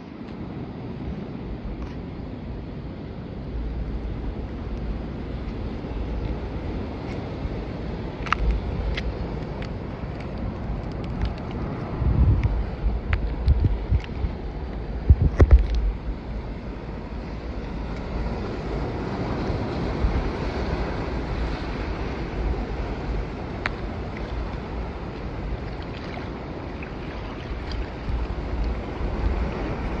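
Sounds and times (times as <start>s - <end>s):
sea water washing: 0.0s - 30.0s
wind rumbling on microphone: 0.0s - 30.0s.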